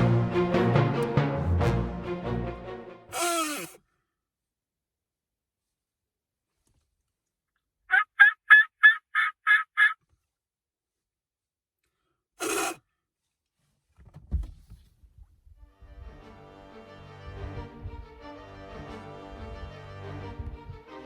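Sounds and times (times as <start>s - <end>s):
short burst of noise: 3.1s - 3.8s, 12.4s - 12.8s
turkey yelping: 7.9s - 10.0s.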